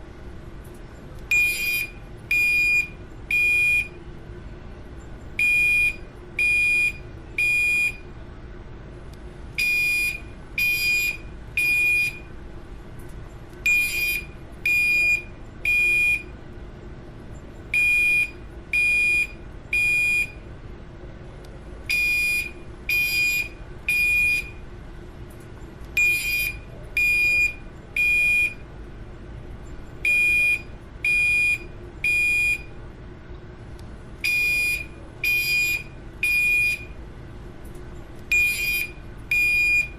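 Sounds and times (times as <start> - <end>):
fire alarm beeping: 1.3 - 4.0, 5.4 - 8.1, 9.6 - 12.3, 13.6 - 16.3, 17.7 - 20.5, 21.9 - 24.6, 26.0 - 28.7, 30.0 - 32.8, 34.2 - 37.0, 38.3 - 39.9.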